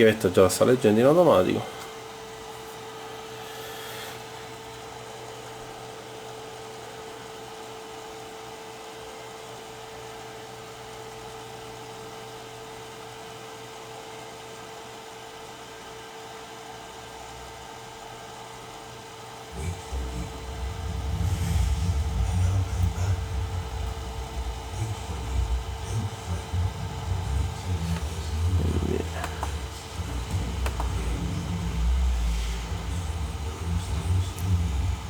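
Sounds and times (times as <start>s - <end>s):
steady machine hum: 0.0s - 8.2s, 18.6s - 35.0s.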